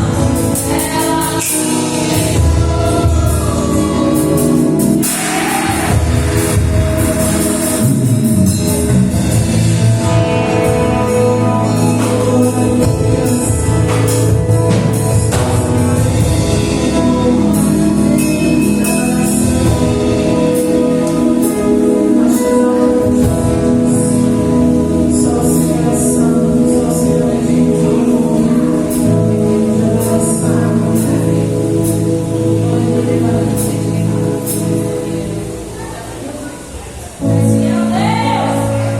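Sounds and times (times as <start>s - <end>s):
gospel band with singing: 0.0s - 38.9s
drum and cymbal hits: 0.4s - 24.0s.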